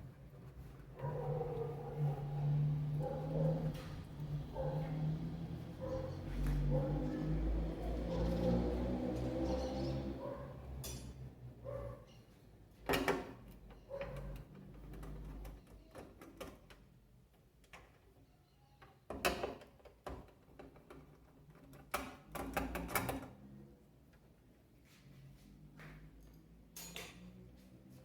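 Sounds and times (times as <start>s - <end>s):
tools clanking on metal: 10.8s - 11.2s, 26.8s - 27.3s.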